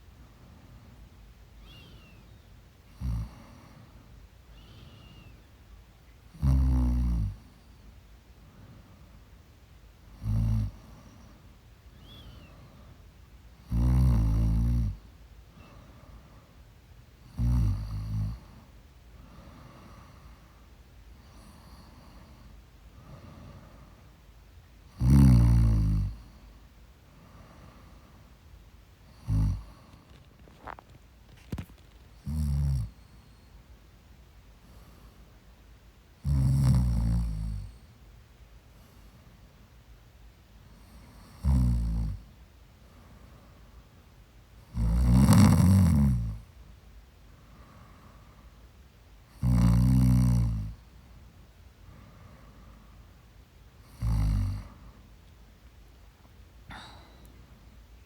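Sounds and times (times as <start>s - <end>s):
quiet breaths: 0.0s - 58.0s
woman snoring: 17.4s - 18.4s, 25.0s - 26.2s, 29.2s - 30.8s, 36.2s - 37.7s, 44.7s - 46.4s, 49.4s - 50.7s, 53.9s - 54.8s, 56.7s - 57.3s.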